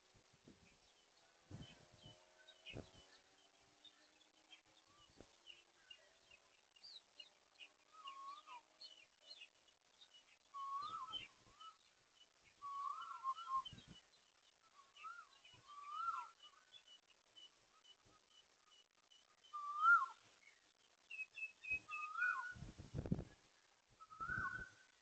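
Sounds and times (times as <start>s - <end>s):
high bird chirps and tweets: 1.6s - 22.6s, 24.0s - 24.9s
birds whistling phrases: 10.5s - 11.8s, 12.6s - 13.9s, 14.8s - 16.3s, 19.5s - 20.2s, 21.1s - 22.6s, 24.0s - 24.8s.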